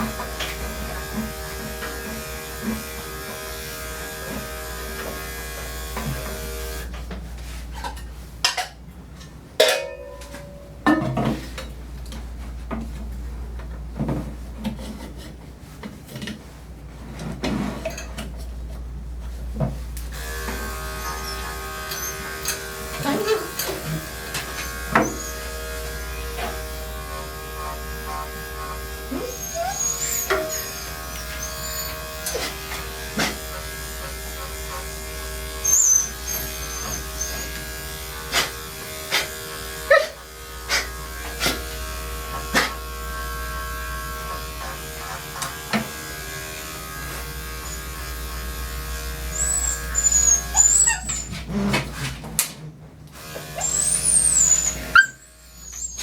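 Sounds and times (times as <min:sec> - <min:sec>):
electric dog clippers running: 0:00.0 - 0:06.9, 0:20.1 - 0:51.3, 0:53.1 - 0:56.0
dog whimpering: 0:20.9 - 0:23.8, 0:24.5 - 0:26.6, 0:29.1 - 0:32.6, 0:35.6 - 0:37.7, 0:49.3 - 0:51.9, 0:53.6 - 0:56.0.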